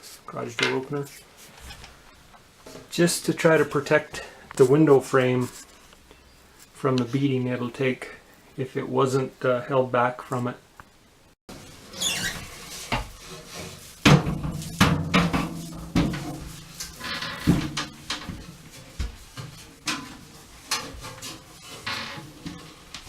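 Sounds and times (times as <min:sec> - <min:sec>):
scraping rub: 0:11.5 - 0:23.0
parts knocking and clunking: 0:14.0 - 0:21.4.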